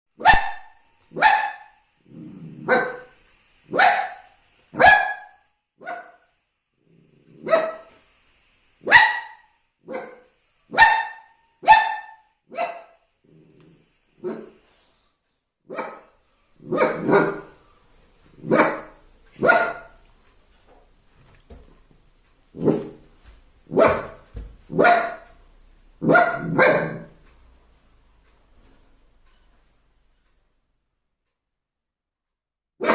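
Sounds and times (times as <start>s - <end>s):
puppy barking: 0.2s - 1.8s, 2.6s - 6.3s, 7.4s - 7.9s, 8.8s - 13.0s, 14.2s - 14.6s, 15.7s - 17.6s, 18.4s - 20.0s, 23.7s - 25.3s, 26.0s - 27.2s
puppy low rumble: 13.2s - 14.6s.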